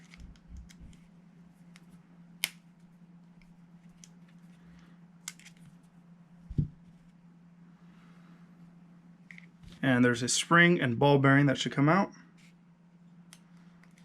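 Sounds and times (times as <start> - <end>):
faint steady hum: 0.0 - 14.0
low thump: 6.5 - 6.8.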